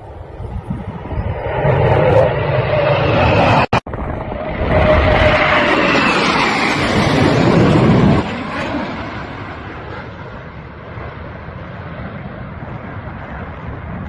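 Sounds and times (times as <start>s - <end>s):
jet fighter roar: 0.0s - 14.0s.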